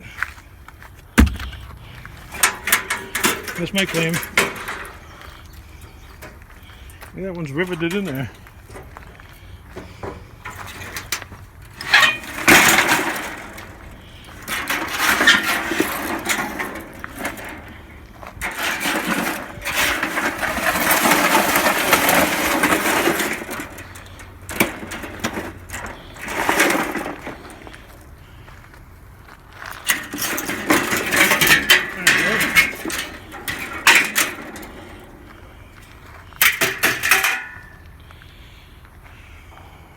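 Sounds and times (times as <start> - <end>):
sharp knocks: 1.2 - 2.1
sheet metal scraping and clanking: 1.2 - 9.1, 9.7 - 28.0, 29.7 - 35.6.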